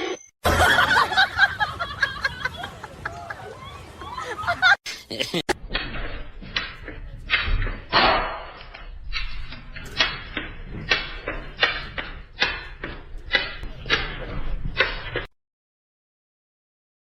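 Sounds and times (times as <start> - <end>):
sharp knocks: 9.9 - 15.2.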